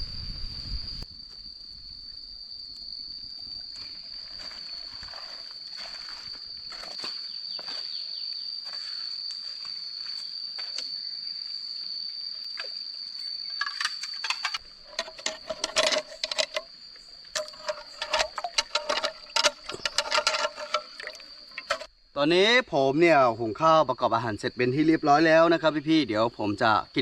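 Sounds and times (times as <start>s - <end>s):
high insect trill: 0.0s - 27.0s
sharp ringing clinks and knocks: 13.6s - 16.7s, 17.3s - 21.9s.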